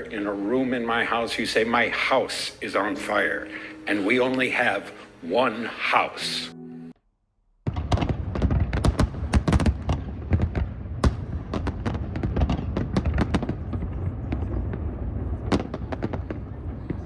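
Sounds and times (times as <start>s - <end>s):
fireworks bangs and crackles: 7.6s - 17.0s.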